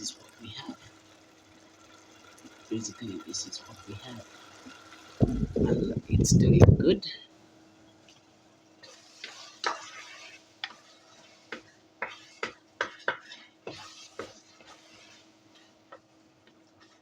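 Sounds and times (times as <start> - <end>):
light sizzle: 0.0 - 12.8.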